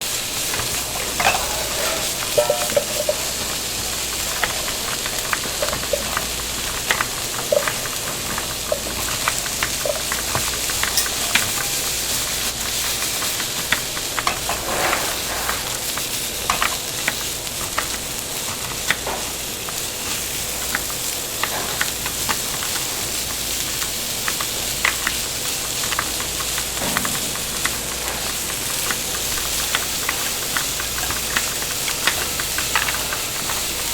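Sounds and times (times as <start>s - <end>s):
steady sizzling hiss: 0.0s - 33.9s
utensils clinking and clattering: 0.4s - 18.0s, 24.3s - 33.9s
ringing tone of metal: 1.2s - 3.3s.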